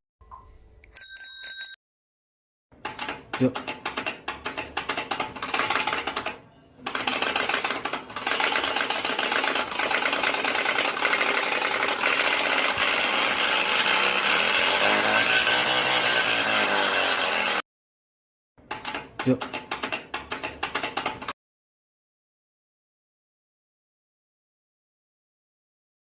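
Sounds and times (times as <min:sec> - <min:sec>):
rapid mechanical clattering: 0:02.8 - 0:16.5, 0:18.7 - 0:21.4.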